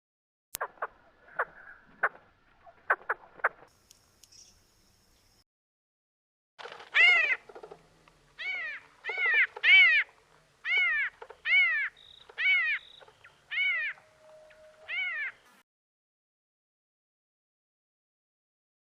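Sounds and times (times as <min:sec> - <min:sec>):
rising and falling bird calls: 0:08.4 - 0:15.6.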